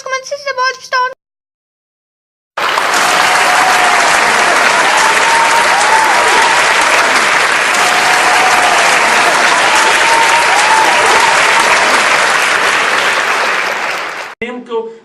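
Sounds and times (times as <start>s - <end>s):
crowd applause: 2.6s - 14.4s.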